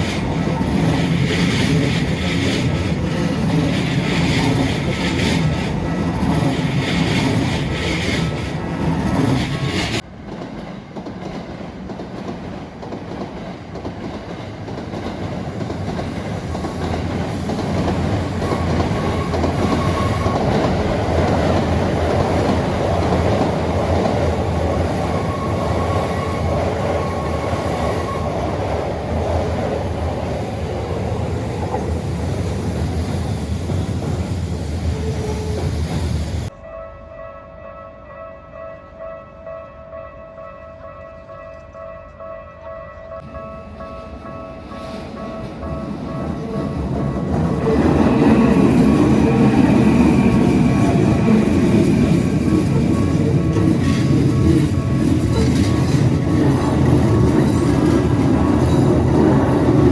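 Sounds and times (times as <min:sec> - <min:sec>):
train wheels rumbling on track: 0:00.0 - 0:36.6, 0:43.2 - 0:59.9
high wheel squeal: 0:19.0 - 0:20.8.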